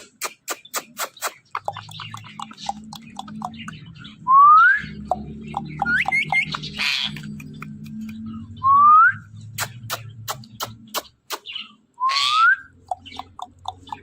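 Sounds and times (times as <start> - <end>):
parrot clicking and chirping: 0.0 - 4.0, 4.9 - 8.3, 9.5 - 11.7, 12.6 - 14.0
parrot harsh squawk: 6.8 - 7.2, 12.0 - 12.6.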